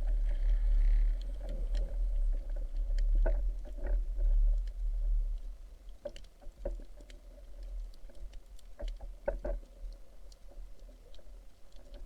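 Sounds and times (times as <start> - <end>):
faint clicks and taps: 5.9 - 12.0.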